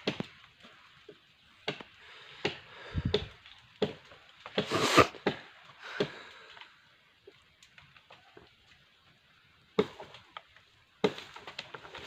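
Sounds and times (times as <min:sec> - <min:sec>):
chopping into tree branch: 0:01.6 - 0:06.2, 0:11.0 - 0:11.5.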